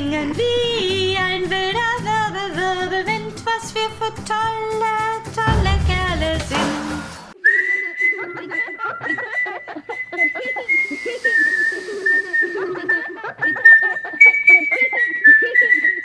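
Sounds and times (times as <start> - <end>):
song ending: 5.5 - 7.4
high steady whistle: 7.3 - 16.0.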